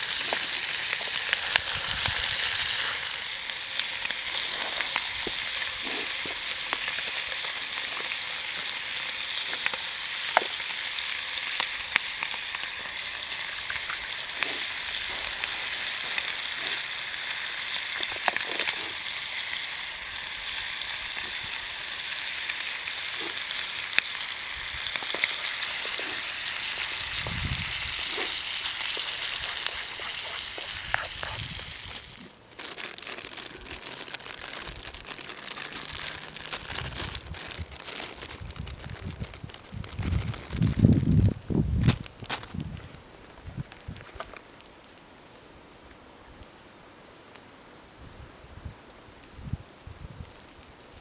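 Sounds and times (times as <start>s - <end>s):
food sizzling in a frying pan: 0.0s - 32.3s.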